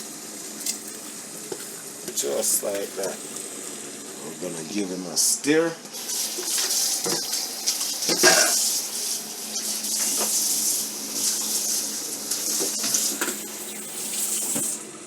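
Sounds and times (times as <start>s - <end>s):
steady hiss: 6.0s - 14.9s.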